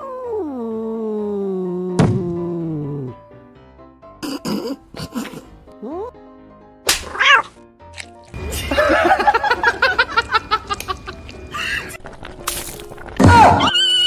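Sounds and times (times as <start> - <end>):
person laughing hard: 8.5 - 12.0.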